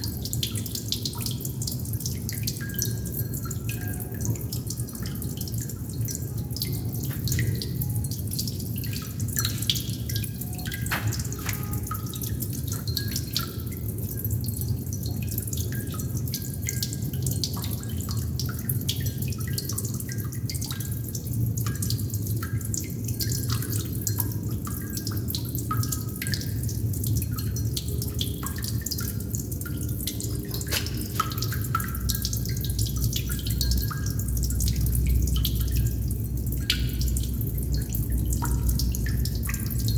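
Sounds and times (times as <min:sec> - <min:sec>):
water droplets plinking: 0:00.6 - 0:14.4, 0:28.5 - 0:39.9.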